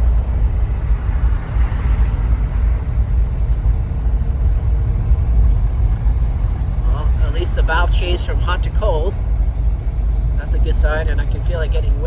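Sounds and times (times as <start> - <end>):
climate fan blowing: 0.0 - 12.0
road and engine rumble in car: 0.0 - 12.0.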